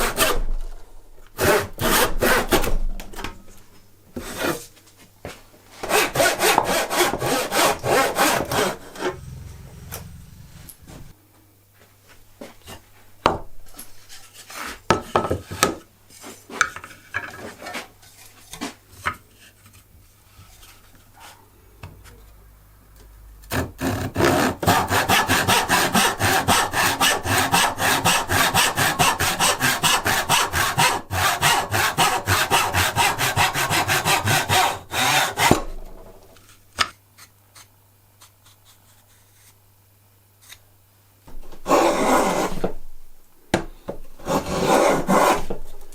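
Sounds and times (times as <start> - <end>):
hand saw cutting wood: 0.0 - 0.4, 1.4 - 2.7, 5.8 - 9.2, 23.5 - 35.8, 41.6 - 42.8, 44.2 - 45.8.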